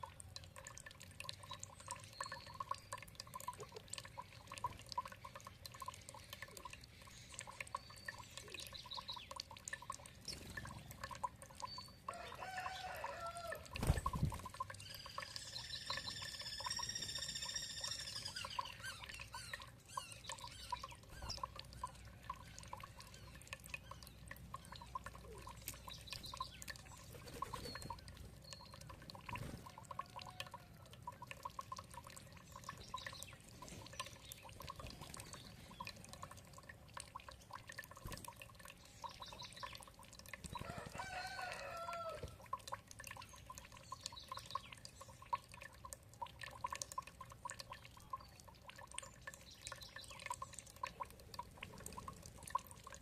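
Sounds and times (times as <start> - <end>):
water trickling and dripping: 0.0 - 53.0
birds calling: 13.9 - 30.4.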